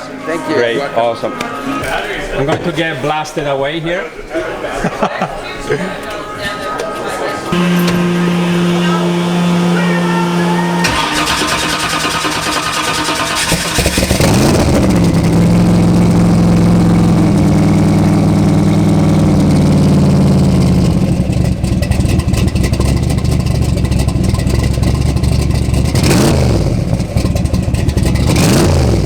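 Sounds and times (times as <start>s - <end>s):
car engine idling loudly: 7.5s - 29.0s.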